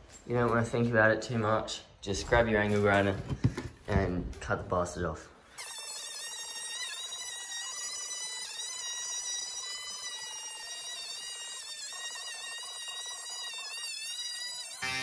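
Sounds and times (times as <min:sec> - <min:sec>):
angle grinder whining: 0:05.5 - 0:15.0.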